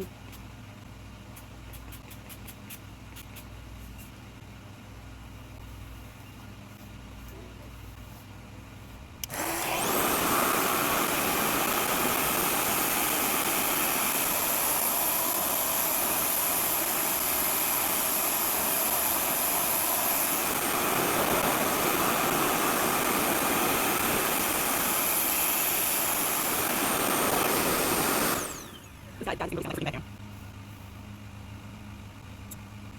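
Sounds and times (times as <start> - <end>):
hair dryer motor whine: 9.2 - 29.0.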